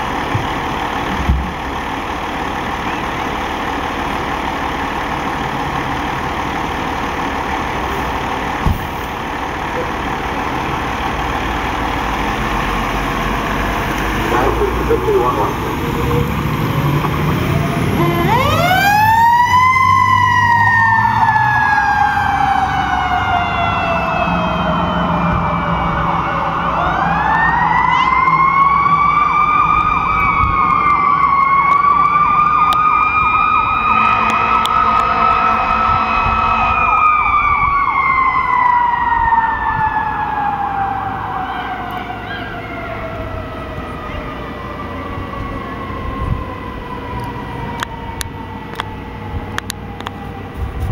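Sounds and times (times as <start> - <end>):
fire engine siren wailing: 0.0 - 50.9
horn blast: 17.9 - 18.9, 33.8 - 37.0.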